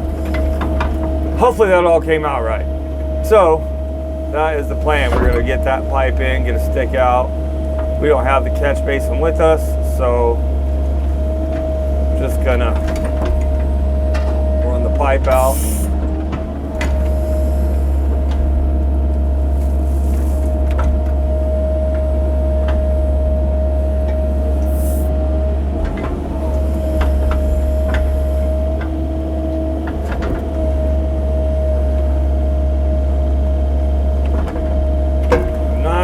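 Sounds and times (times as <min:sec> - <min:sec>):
excavator diesel engine droning: 0:00.0 - 0:36.0
high whine: 0:04.3 - 0:10.5
sharp digging knocks: 0:04.8 - 0:06.1.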